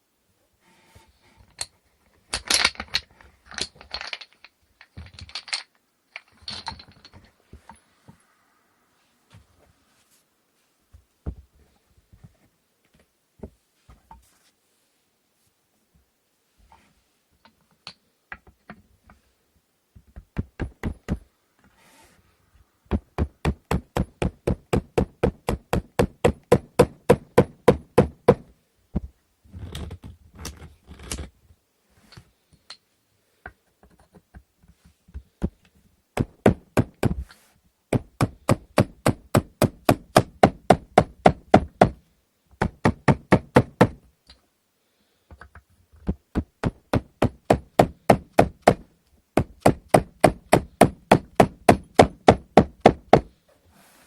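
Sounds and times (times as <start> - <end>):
knocking on wooden loom: 42.6 - 44.0.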